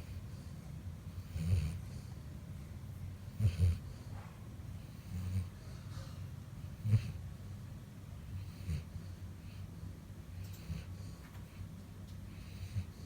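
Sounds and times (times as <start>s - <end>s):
dog snoring: 1.1s - 2.2s, 3.2s - 4.2s, 4.8s - 7.2s, 8.2s - 13.0s.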